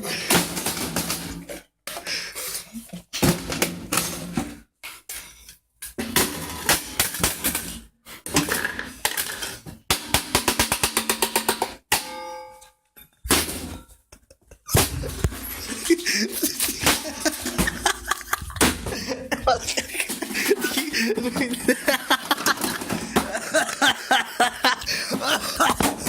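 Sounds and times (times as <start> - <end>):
hard objects clattering: 13.1 - 26.0.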